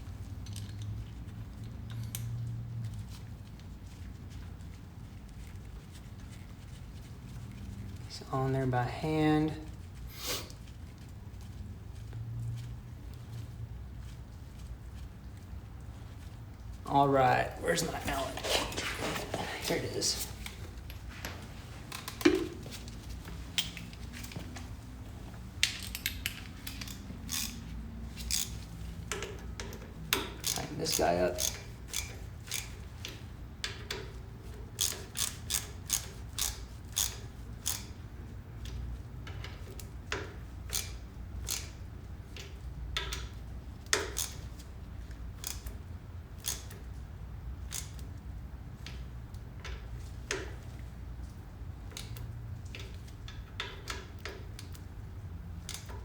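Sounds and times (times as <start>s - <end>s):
allen key clicking on screws: 23.6s - 24.4s, 25.6s - 38.0s, 38.6s - 45.8s, 46.4s - 47.0s
allen key metallic clicks: 23.6s - 24.4s, 25.6s - 27.6s.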